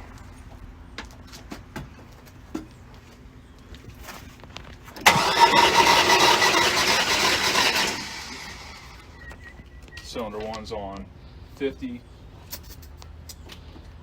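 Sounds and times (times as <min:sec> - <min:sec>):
engine cranking on starter: 0:05.0 - 0:09.5.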